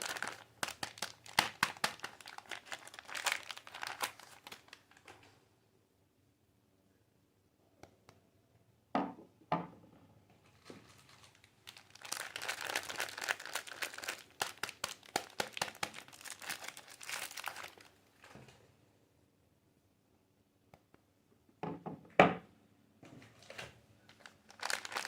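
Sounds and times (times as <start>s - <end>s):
wrapper tearing: 0.0s - 5.2s, 10.6s - 18.0s, 24.1s - 25.0s
wrapper crinkling: 0.0s - 5.3s, 10.5s - 18.3s, 24.1s - 25.0s.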